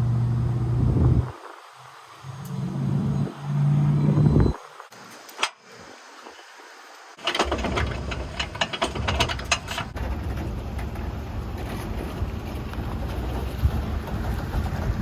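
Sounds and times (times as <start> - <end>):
low engine rumble: 0.0 - 4.9, 7.4 - 15.0
clatter of clicks and rattles: 7.2 - 14.9.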